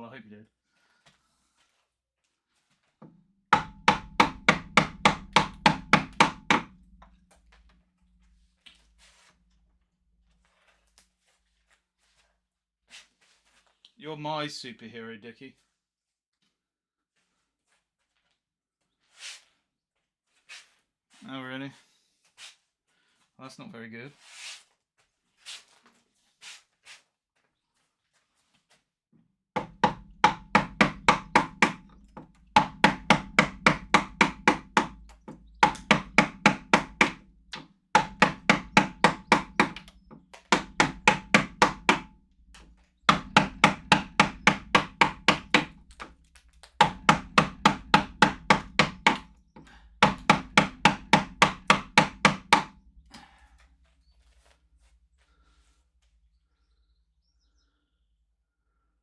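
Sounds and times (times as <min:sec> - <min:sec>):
mallet striking chisel into wood: 0:03.0 - 0:07.0, 0:29.6 - 0:52.8.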